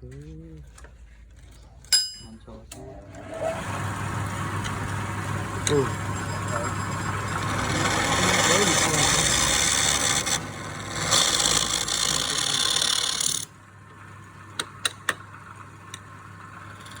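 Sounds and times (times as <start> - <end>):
lathe low hum: 0.2 - 17.0
tool scraping wood on lathe: 3.2 - 13.5, 16.6 - 17.0.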